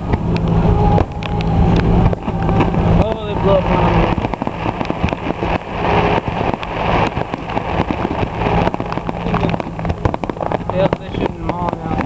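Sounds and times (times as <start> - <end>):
fireworks crackling pops: 0.0 - 12.0
steady low hum: 0.0 - 12.0.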